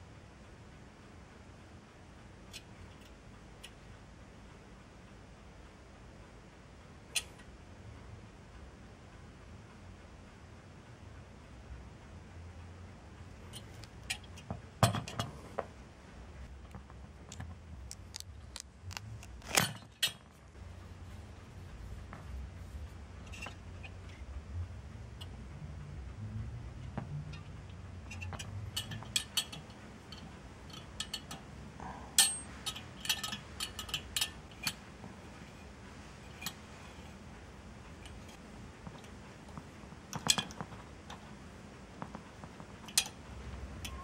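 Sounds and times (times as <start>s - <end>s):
small metal parts clicking: 16.7s - 20.4s, 28.1s - 31.4s, 32.2s - 34.8s
low handling rumble: 20.2s - 30.7s.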